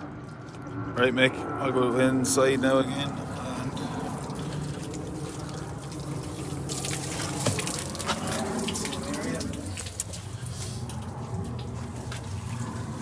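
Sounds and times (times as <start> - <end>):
low steady hum: 0.0 - 13.0
water splashing against a door: 3.2 - 13.0.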